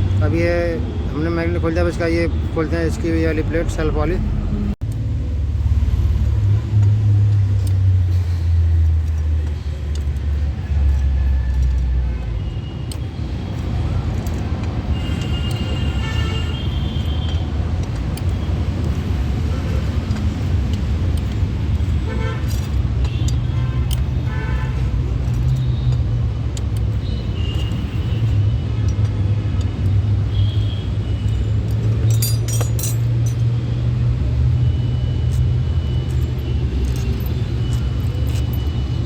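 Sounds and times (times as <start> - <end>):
traffic engine rumble: 0.0 - 39.0
vehicle horns: 14.9 - 17.5, 22.0 - 25.9, 27.0 - 31.6.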